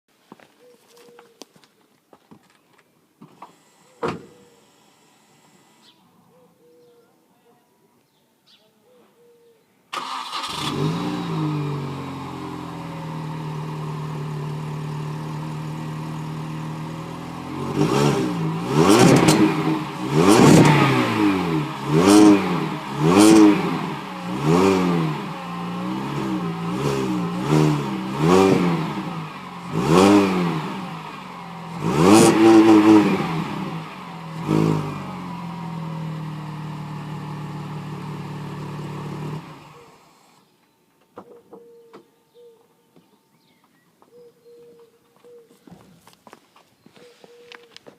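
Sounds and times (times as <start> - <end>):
car engine idling and revving: 10.0 - 40.5.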